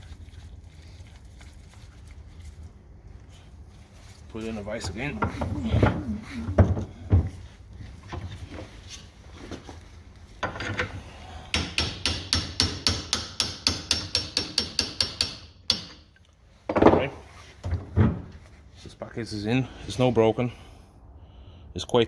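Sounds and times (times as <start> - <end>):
hammer tapping on metal: 11.5 - 16.0.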